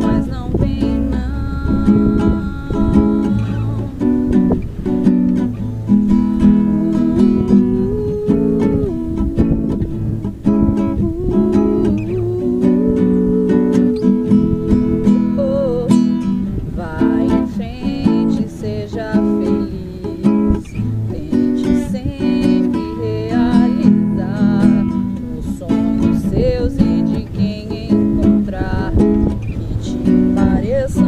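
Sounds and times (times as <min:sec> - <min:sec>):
acoustic guitar reggae strumming: 0:00.0 - 0:31.0.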